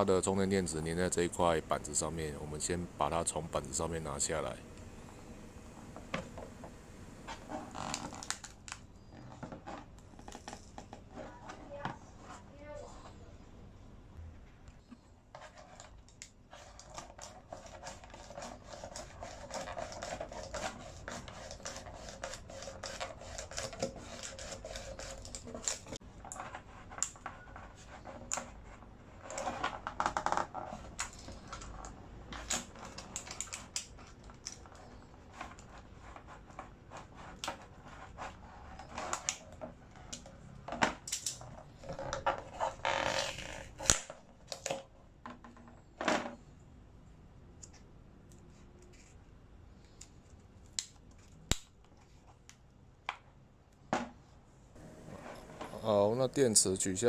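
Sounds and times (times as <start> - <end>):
scraping and rubbing: 9.0 - 13.2, 15.2 - 40.3, 41.4 - 44.0, 54.8 - 56.5.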